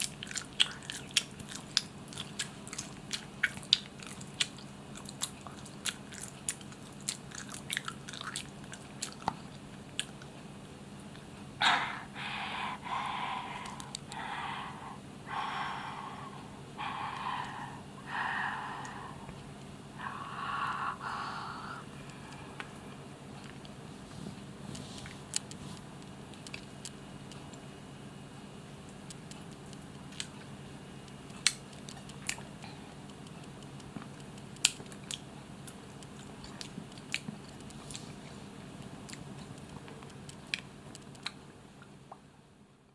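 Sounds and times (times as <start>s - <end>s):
mouth chewing clicks and smacks: 0.0s - 10.4s, 31.1s - 38.0s, 38.8s - 42.2s
steady low hum: 0.0s - 42.9s
soft puffs of breath: 11.6s - 22.8s.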